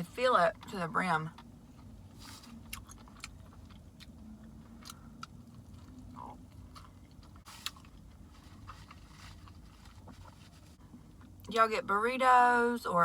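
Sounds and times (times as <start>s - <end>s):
low steady hum: 0.0s - 13.0s
person chewing: 1.4s - 11.5s.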